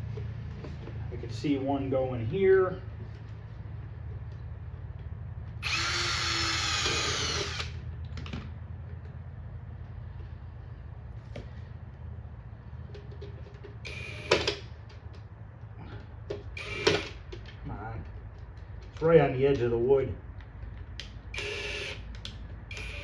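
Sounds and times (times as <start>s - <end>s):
power drill driving screw: 5.6s - 7.8s, 13.9s - 14.6s, 16.6s - 17.2s, 21.4s - 22.0s, 22.7s - 23.0s.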